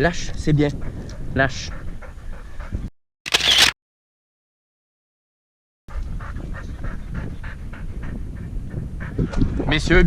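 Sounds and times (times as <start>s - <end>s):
dog panting: 0.6s - 2.9s, 5.9s - 9.6s.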